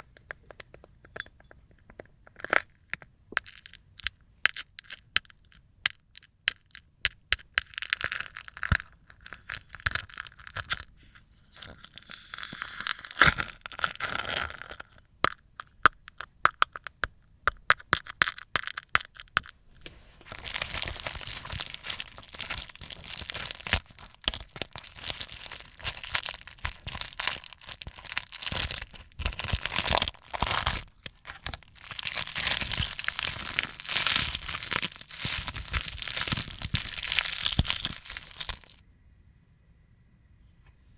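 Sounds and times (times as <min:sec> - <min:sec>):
dried slime crackling and tearing: 0:07.6 - 0:10.9, 0:11.5 - 0:15.0, 0:20.2 - 0:38.8.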